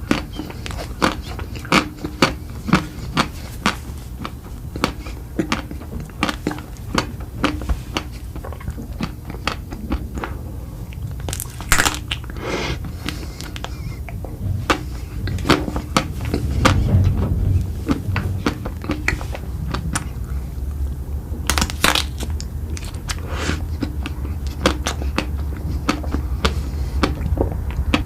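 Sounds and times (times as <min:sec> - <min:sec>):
crunchy chewing: 0:00.0 - 0:28.0
noisy rustle: 0:02.0 - 0:24.3.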